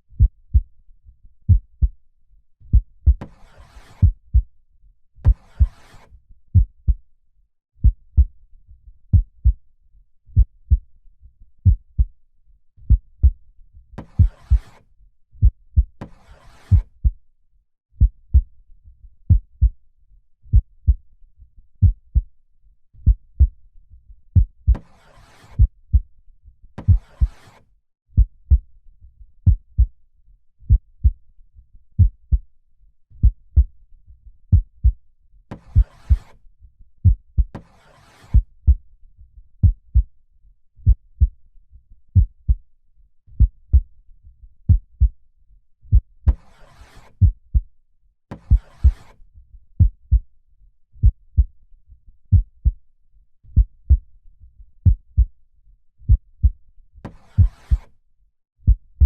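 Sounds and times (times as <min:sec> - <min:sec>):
slow heartbeat: 0:00.1 - 0:00.7, 0:01.5 - 0:02.0, 0:02.7 - 0:03.4, 0:04.0 - 0:04.5, 0:06.5 - 0:07.0, 0:07.8 - 0:08.4, 0:09.1 - 0:09.6, 0:10.4 - 0:10.9, 0:11.6 - 0:12.1, 0:12.9 - 0:13.4, 0:14.0 - 0:14.8, 0:15.4 - 0:16.0, 0:16.7 - 0:17.2, 0:18.0 - 0:18.5, 0:19.3 - 0:19.8, 0:20.5 - 0:21.0, 0:21.8 - 0:22.3, 0:23.0 - 0:23.6, 0:24.4 - 0:25.0, 0:26.8 - 0:27.4, 0:28.2 - 0:28.7, 0:29.4 - 0:29.9, 0:30.6 - 0:31.2, 0:32.0 - 0:32.4, 0:33.2 - 0:33.7, 0:34.5 - 0:35.0, 0:35.7 - 0:36.3, 0:39.6 - 0:40.1, 0:40.8 - 0:41.4, 0:42.2 - 0:42.6, 0:43.4 - 0:43.9, 0:44.6 - 0:45.2, 0:45.9 - 0:46.5, 0:47.1 - 0:47.7, 0:48.4 - 0:49.1, 0:49.8 - 0:50.2, 0:51.0 - 0:51.5, 0:52.3 - 0:52.8, 0:53.5 - 0:54.0, 0:54.8 - 0:55.3, 0:56.1 - 0:56.6, 0:57.2 - 0:57.8, 0:58.6 - 0:59.0.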